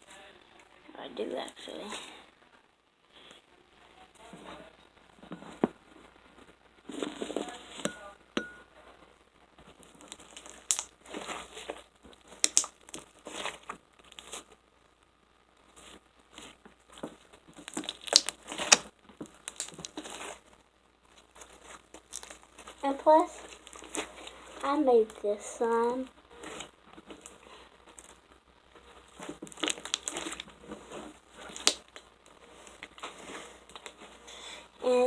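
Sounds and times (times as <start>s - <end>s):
slime squished by hand: 9.8s - 14.5s, 16.3s - 20.5s, 21.2s - 24.7s, 29.0s - 34.2s.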